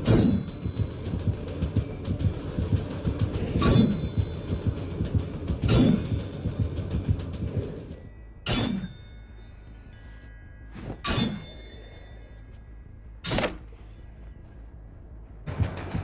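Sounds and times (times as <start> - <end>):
sword blade strikes ringing: 0.0 - 1.1, 3.6 - 4.4, 5.7 - 6.8, 8.4 - 9.8, 10.8 - 12.5, 13.2 - 13.7.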